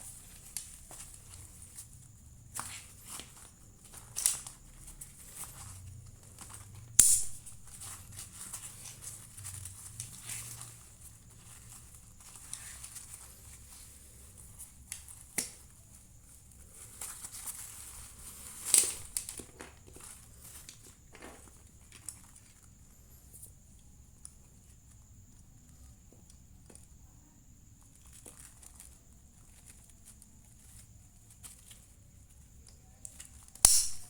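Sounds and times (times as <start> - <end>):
bag rustling and crinkling: 0.0 - 23.0
sharp clicks: 33.6 - 34.0.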